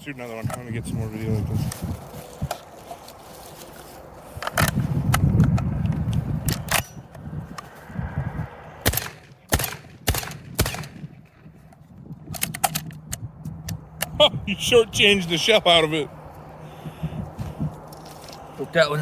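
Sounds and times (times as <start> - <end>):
shotgun shot: 8.8 - 11.1
sharp clicks: 12.3 - 14.2.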